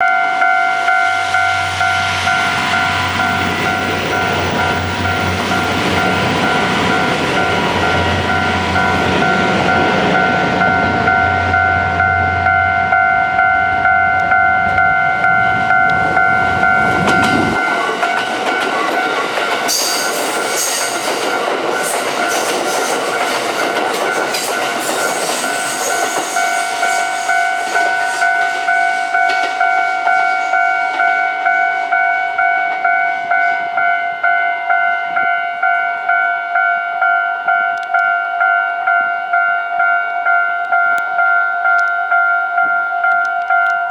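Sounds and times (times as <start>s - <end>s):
level crossing bell ringing: 0.0s - 19.8s, 26.4s - 43.9s
train wheels clacking: 15.8s - 31.3s.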